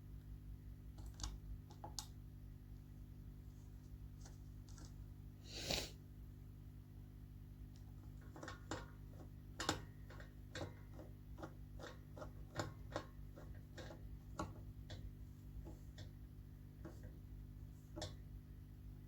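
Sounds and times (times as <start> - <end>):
low electrical hum: 0.0 - 19.0
sharp irregular clicks and taps: 1.0 - 2.2, 7.7 - 16.2.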